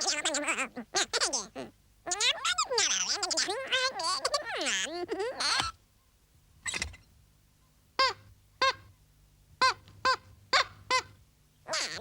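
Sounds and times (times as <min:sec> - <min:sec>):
squeaky cartoon gibberish voice: 0:00.0 - 0:05.7, 0:11.7 - 0:12.0.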